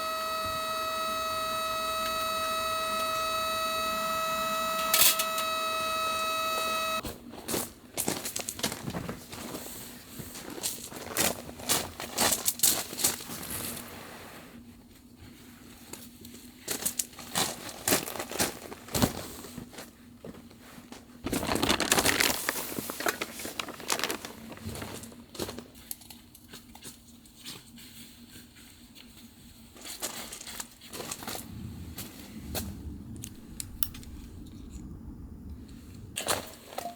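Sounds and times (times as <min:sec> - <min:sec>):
gear crinkling and rustling: 0:21.3 - 0:26.1.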